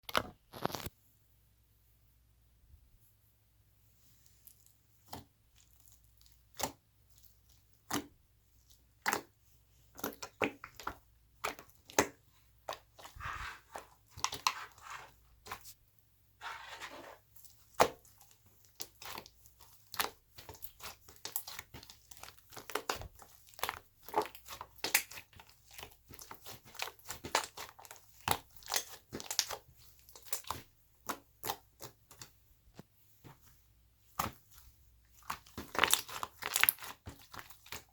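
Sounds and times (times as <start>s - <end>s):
sharp clicks and pops: 0.0s - 0.9s
crinkly crackling: 0.5s - 0.9s
slime squished by hand: 4.4s - 15.8s, 17.4s - 32.8s, 34.1s - 37.9s.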